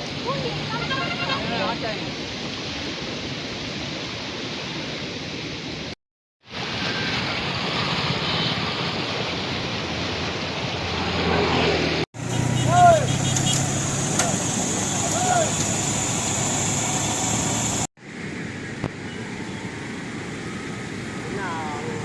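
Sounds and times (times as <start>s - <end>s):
water rushing through sluices: 6.4s - 18.9s.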